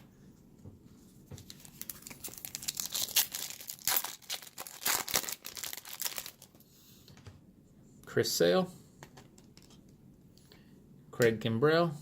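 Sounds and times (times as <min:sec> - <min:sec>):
plastic wrapper crinkling and tearing: 0:01.4 - 0:06.6.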